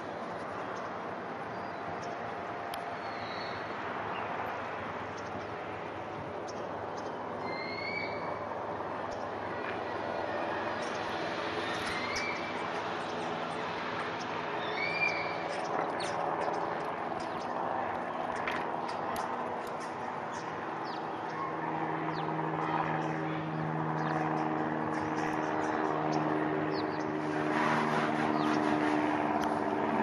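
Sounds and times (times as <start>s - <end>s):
outdoor background noise: 0.0s - 30.0s
small plane engine droning: 0.0s - 30.0s
bird chirps: 6.5s - 8.3s, 11.6s - 13.3s, 14.6s - 17.6s.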